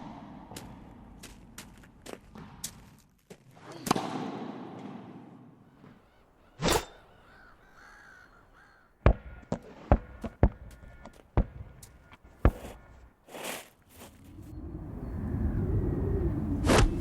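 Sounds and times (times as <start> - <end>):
ball bouncing on a court: 9.0 - 12.9
sneakers squeaking: 9.1 - 14.4.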